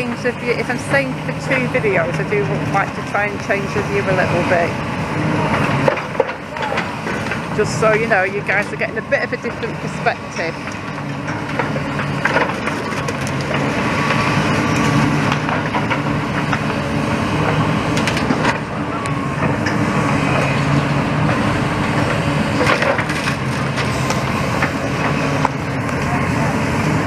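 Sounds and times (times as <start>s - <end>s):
demolition machinery running: 0.0s - 27.0s
debris snapping: 10.6s - 14.2s
rubble cracking and crunching: 10.6s - 16.8s, 22.0s - 26.1s.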